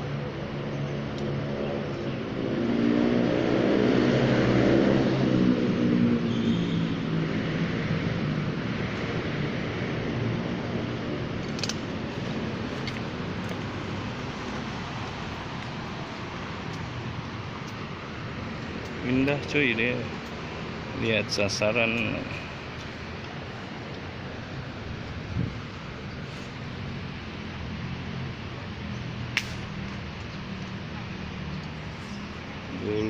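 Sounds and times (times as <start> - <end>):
traffic noise: 0.0 - 33.0
vehicle engine passing: 1.3 - 33.0.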